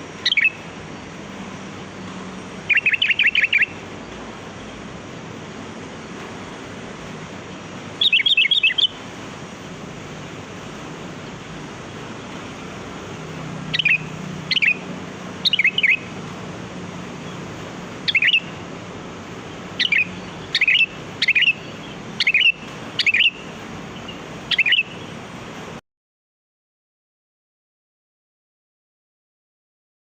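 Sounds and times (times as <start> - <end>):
steady hiss: 0.0 - 25.8
bulbul short calls: 2.6 - 3.9, 7.9 - 9.1, 13.7 - 16.2, 18.0 - 18.7, 19.6 - 25.0.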